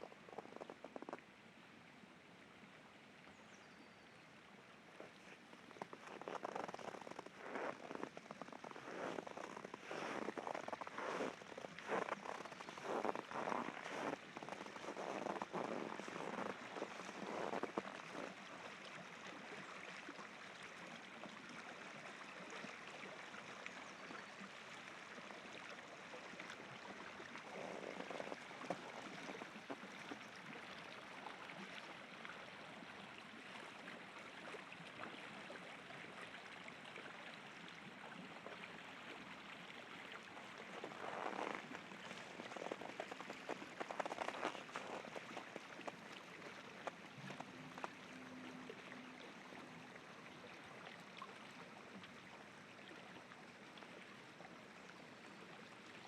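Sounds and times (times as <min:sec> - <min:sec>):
footsteps crunching in snow: 0:05.8 - 0:18.3, 0:40.8 - 0:45.9.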